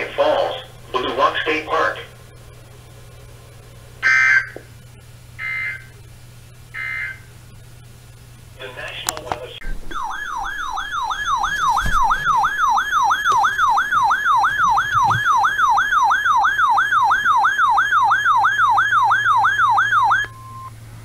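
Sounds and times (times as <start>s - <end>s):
electronic siren alarm tone: 4.0s - 4.6s, 5.4s - 6.0s, 6.7s - 7.3s, 9.6s - 20.7s.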